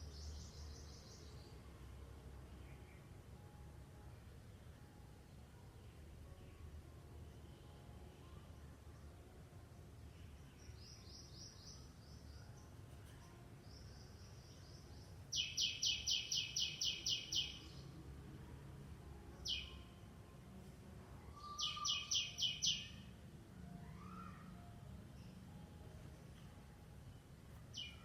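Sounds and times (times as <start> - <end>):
songbird singing high falling notes: 10.2 - 18.0, 19.4 - 19.9, 21.2 - 26.4, 27.2 - 28.0.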